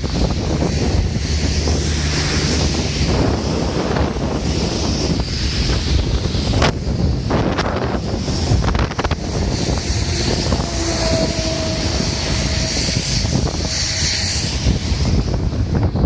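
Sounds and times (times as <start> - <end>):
rainstorm: 0.0 - 16.0
wind buffeting microphone: 0.0 - 16.0.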